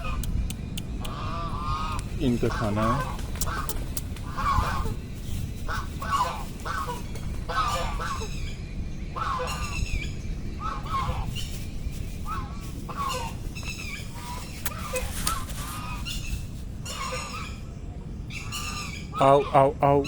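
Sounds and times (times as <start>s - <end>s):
ducks honking: 0.0s - 5.0s, 5.6s - 8.5s, 9.1s - 11.5s, 12.2s - 17.6s
low steady rumble: 0.0s - 20.0s.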